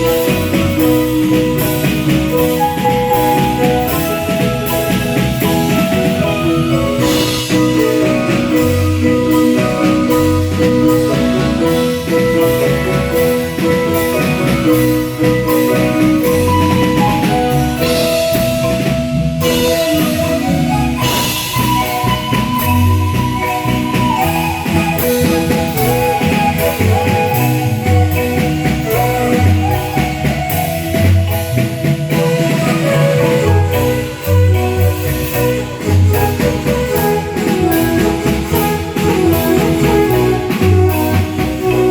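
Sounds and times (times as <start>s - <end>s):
bass notes: 0.0s - 41.9s
marimba melody: 0.0s - 41.9s
percussion beat: 0.0s - 41.9s.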